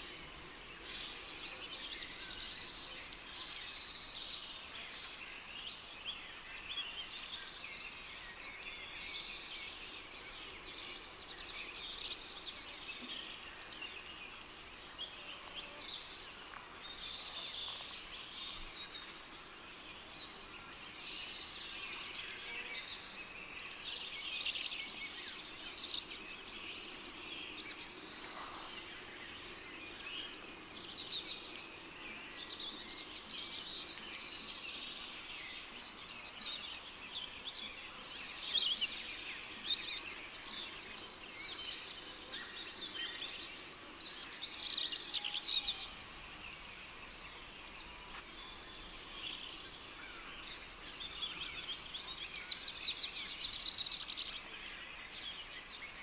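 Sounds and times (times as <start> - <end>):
cricket chirping: 13.2 - 56.0.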